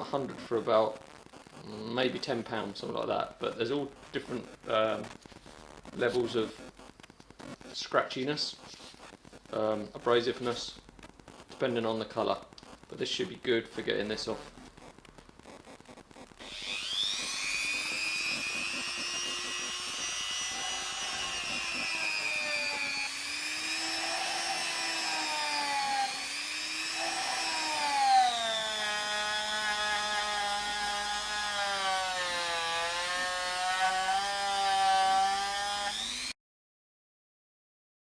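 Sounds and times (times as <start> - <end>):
rotary tool high whine: 15.7 - 36.4.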